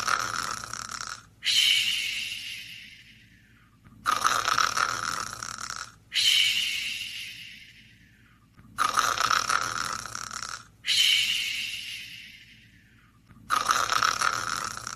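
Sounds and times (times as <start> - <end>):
person snoring: 0.0 - 3.2, 4.0 - 8.0, 8.8 - 14.9
person breathing: 0.0 - 4.2, 6.1 - 9.1, 10.8 - 14.9.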